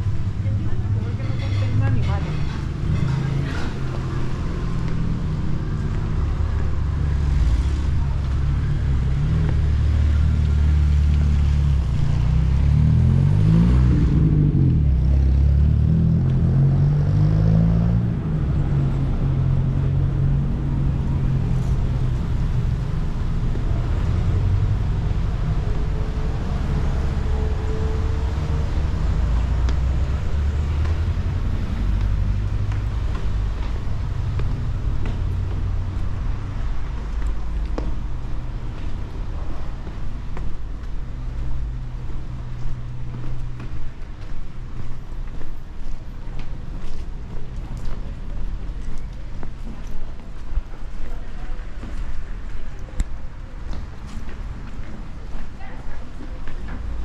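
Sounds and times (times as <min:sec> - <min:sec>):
vehicle engines running: 0:00.0 - 0:57.0
engine revving up and down: 0:12.4 - 0:18.2.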